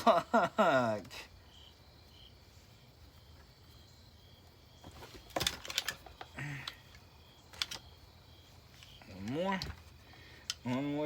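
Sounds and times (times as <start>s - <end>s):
plastic and metal parts clicking: 5.3s - 7.9s.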